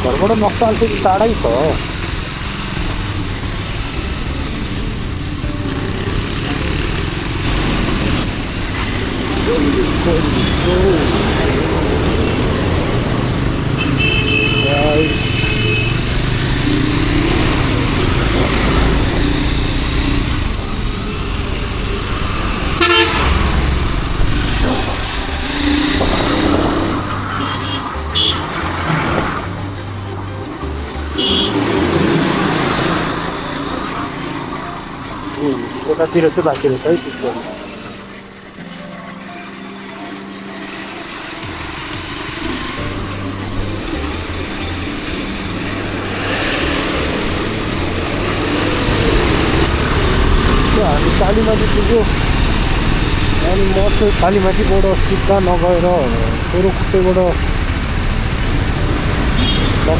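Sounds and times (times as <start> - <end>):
motorcycle engine and wind rumble: 0.0 - 37.7
vehicle horn toots: 5.7 - 20.9, 22.5 - 30.0, 30.6 - 38.2, 42.3 - 59.9.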